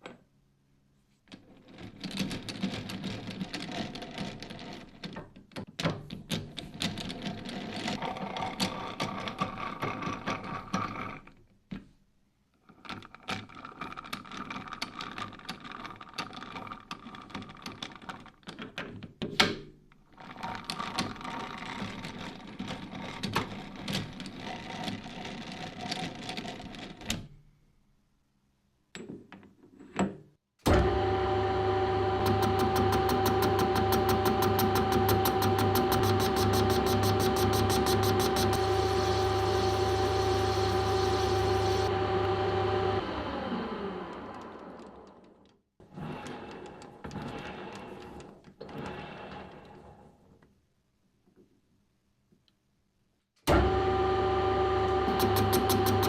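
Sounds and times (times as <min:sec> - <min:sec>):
faint whine: 0:30.7 - 0:42.6
lathe clattering rattle: 0:32.2 - 0:41.9.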